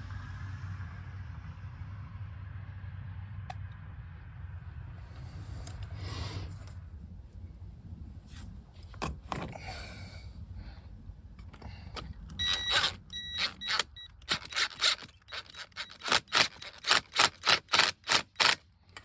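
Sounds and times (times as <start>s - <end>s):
power drill driving screws: 12.3s - 18.6s.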